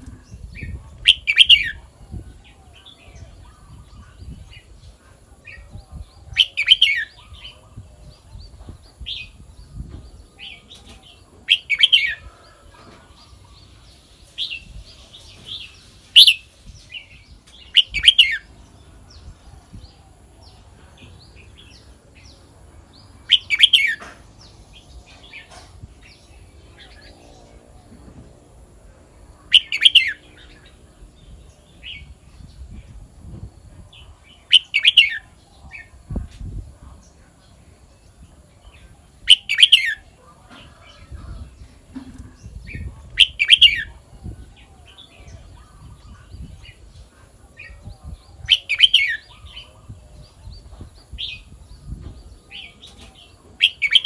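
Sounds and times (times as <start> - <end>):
bird song phrases: 0.0 - 54.0.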